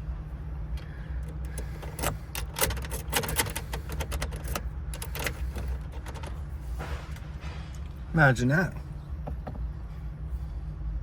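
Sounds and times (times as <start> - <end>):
steady low hum: 0.0 - 11.0
keys jingling in ignition lock: 1.2 - 6.4.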